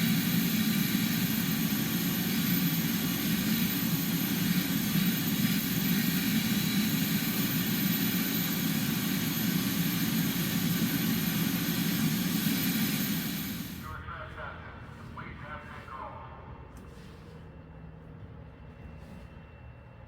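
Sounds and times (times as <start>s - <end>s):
vacuum cleaner running: 0.0s - 13.8s.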